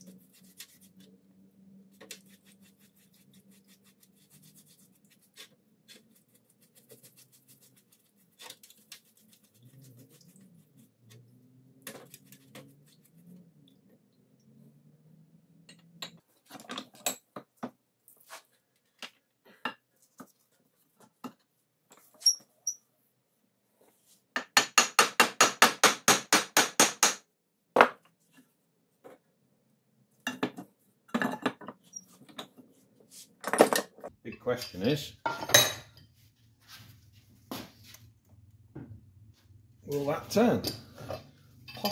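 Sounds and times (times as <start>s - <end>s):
metal clinks and knocks: 40.6s - 41.9s.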